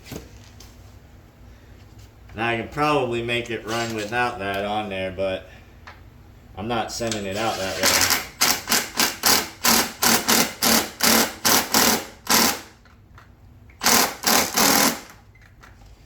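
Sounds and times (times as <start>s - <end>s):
ratchet wrench rasping: 7.4s - 12.7s, 13.8s - 15.2s.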